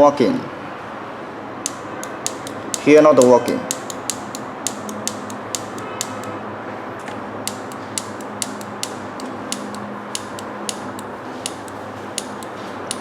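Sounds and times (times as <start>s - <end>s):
sharp short clicks: 1.7s - 6.4s, 7.5s - 13.0s.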